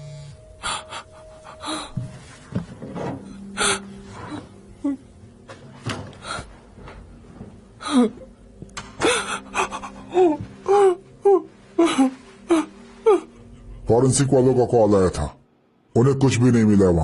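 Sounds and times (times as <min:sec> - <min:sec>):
woman crying in gasping sobs: 0:00.6 - 0:02.2, 0:07.8 - 0:13.8.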